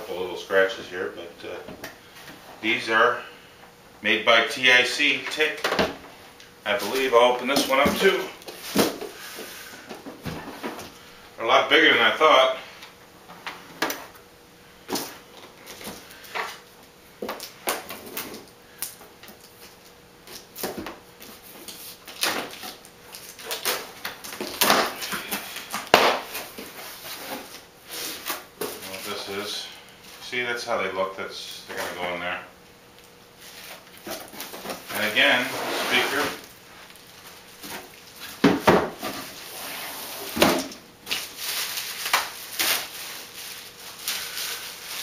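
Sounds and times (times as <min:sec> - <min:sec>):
packaging rustling and scraping: 0:19.5 - 0:30.2, 0:33.4 - 0:45.0
packaging rustling: 0:41.0 - 0:45.0.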